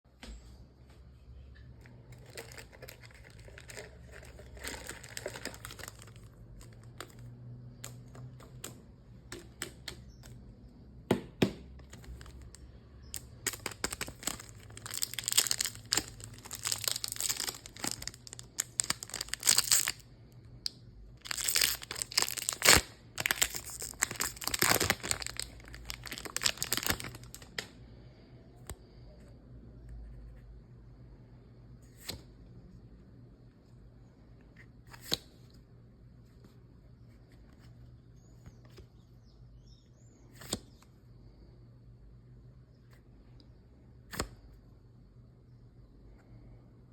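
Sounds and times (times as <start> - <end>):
card packaging crinkling and tearing: 1.8 - 8.4, 11.8 - 20.1, 21.2 - 27.7.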